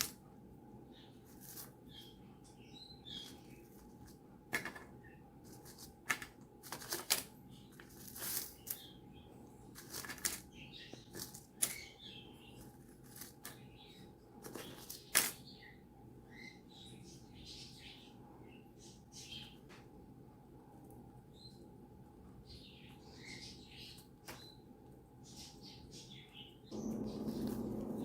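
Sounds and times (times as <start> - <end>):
sharp cracks and rustles: 5.5 - 8.9, 9.7 - 10.5.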